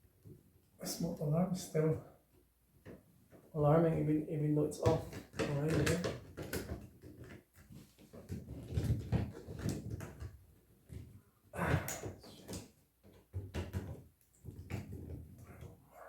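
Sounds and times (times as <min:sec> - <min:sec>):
plastic knocks and clatter: 0:04.8 - 0:15.7.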